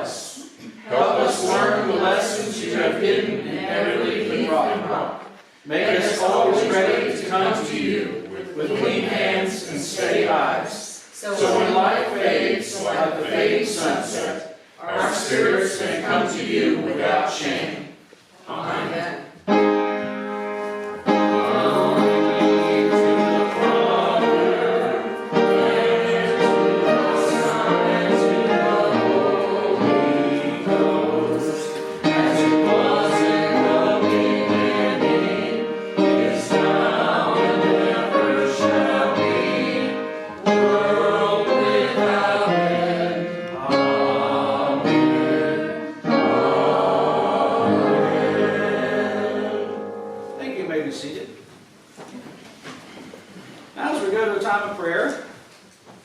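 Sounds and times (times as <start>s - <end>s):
group singing a hymn: 0.0s - 50.4s
keyboard accompaniment: 19.4s - 51.0s.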